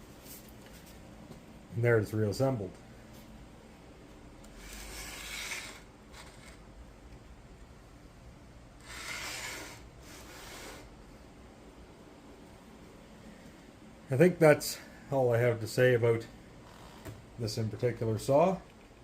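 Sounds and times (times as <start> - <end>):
rubbing and scraping: 4.6 - 6.6, 8.8 - 10.9.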